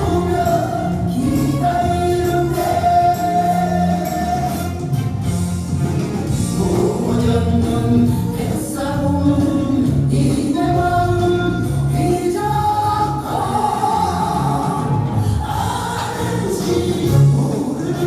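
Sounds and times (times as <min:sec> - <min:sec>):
instrumental backing with bass: 0:00.0 - 0:18.0
person singing long notes: 0:06.6 - 0:18.0.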